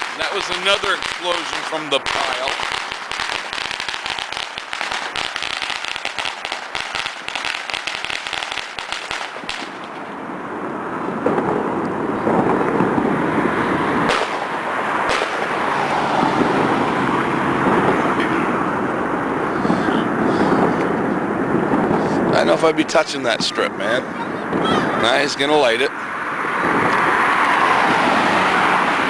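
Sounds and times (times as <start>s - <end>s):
sharp bangs: 0.0s - 10.4s, 13.8s - 16.9s
firecrackers crackling: 0.0s - 29.0s
steady rushing noise: 0.0s - 29.0s.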